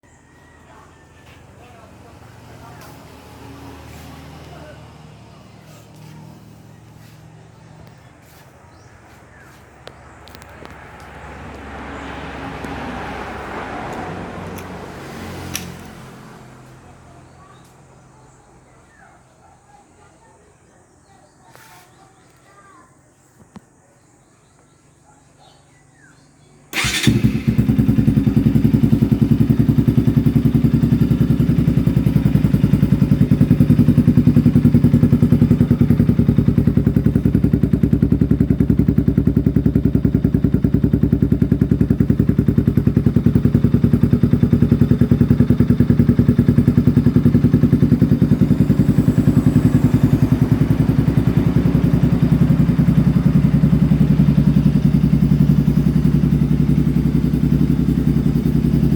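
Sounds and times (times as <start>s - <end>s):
motorcycle engine starting and idling: 0.0s - 18.9s, 26.7s - 58.9s.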